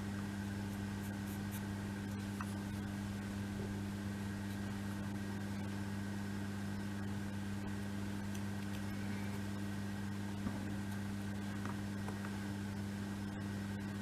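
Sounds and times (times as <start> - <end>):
low electrical hum: 0.0 - 14.0.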